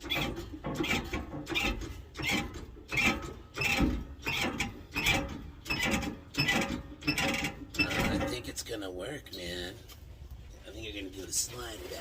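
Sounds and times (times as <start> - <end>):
car jack clicking and creaking: 0.0 - 8.5.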